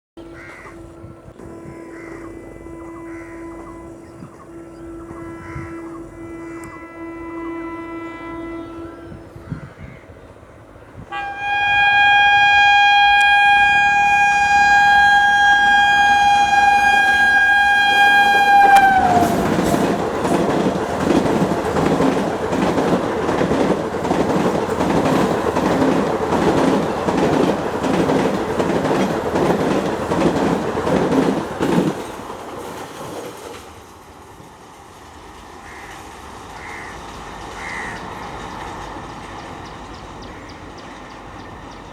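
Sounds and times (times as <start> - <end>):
train horn blast: 0.2 - 10.0, 11.0 - 24.4
locomotive passing at speed: 11.1 - 41.9
clickety-clack of train wheels: 16.6 - 41.9.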